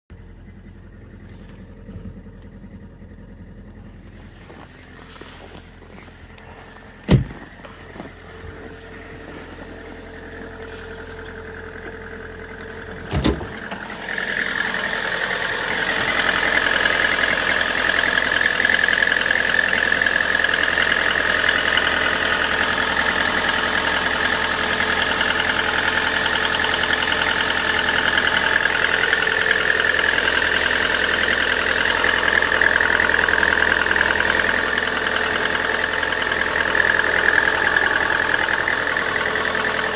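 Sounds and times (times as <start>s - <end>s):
car engine knocking: 0.1s - 39.9s
sharp thumps: 6.4s - 8.8s, 12.6s - 13.9s.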